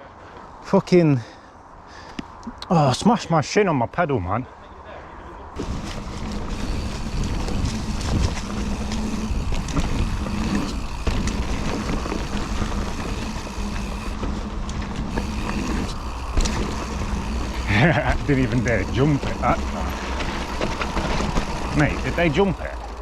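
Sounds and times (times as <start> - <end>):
tyres rumbling on dirt: 5.5 - 23.0
bike clicks and rattles: 5.6 - 23.0.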